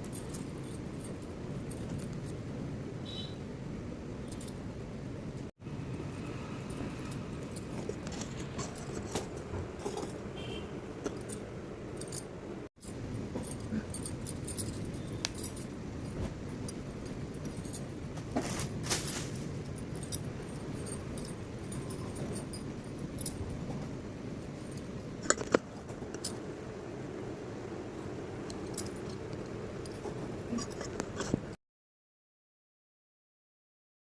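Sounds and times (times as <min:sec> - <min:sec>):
low background noise: 0:00.0 - 0:31.6
items clinking and rustling: 0:06.7 - 0:26.5, 0:28.4 - 0:31.6.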